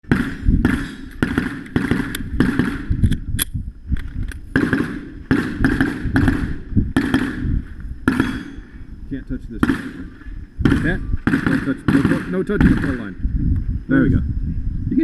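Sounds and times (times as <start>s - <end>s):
pistol shots with echo: 0.0s - 3.0s, 4.6s - 8.6s, 9.6s - 13.2s.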